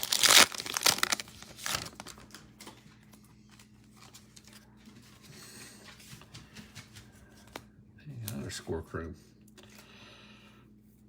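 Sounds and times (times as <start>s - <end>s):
plastic wrapper crinkling: 0.0s - 2.8s
cards rustling and clicking: 0.0s - 5.0s.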